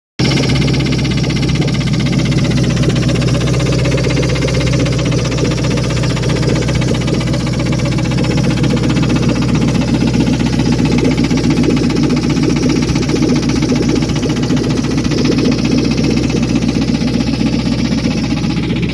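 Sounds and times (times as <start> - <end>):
engine idling with knocking tick: 0.2 - 18.9.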